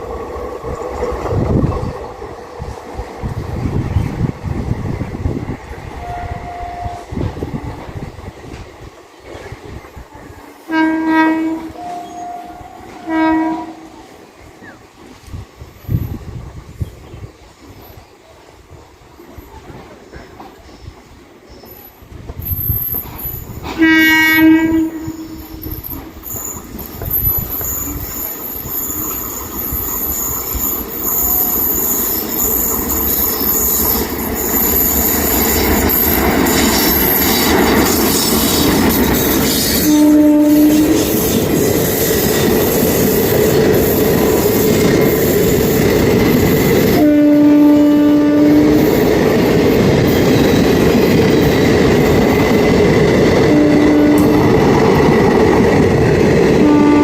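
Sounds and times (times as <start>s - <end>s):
train wheels clattering on rails: 0.0s - 6.1s, 6.7s - 10.5s, 19.2s - 47.2s, 48.4s - 57.0s
train rumbling: 0.0s - 57.0s
locomotive horn: 6.0s - 7.2s, 10.7s - 14.0s, 23.7s - 26.2s, 39.5s - 41.3s, 46.9s - 49.0s, 53.5s - 54.6s, 56.6s - 57.0s.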